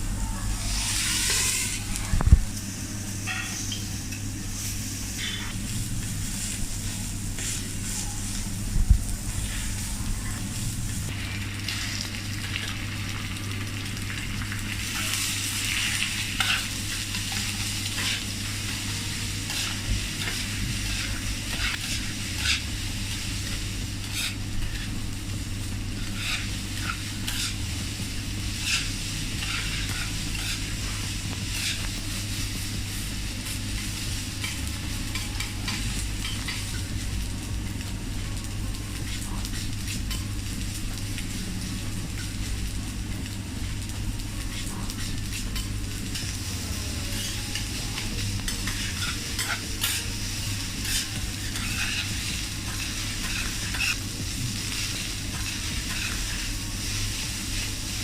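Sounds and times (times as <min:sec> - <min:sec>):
food sizzling on hot plate: 0:00.2 - 0:58.0
metal spatulas scraping griddle: 0:00.7 - 0:01.9, 0:05.2 - 0:05.6, 0:14.9 - 0:18.6, 0:19.4 - 0:22.7, 0:24.0 - 0:25.0, 0:26.0 - 0:27.6, 0:28.5 - 0:30.8, 0:31.5 - 0:32.0, 0:47.0 - 0:50.2, 0:50.8 - 0:54.0, 0:54.6 - 0:56.5.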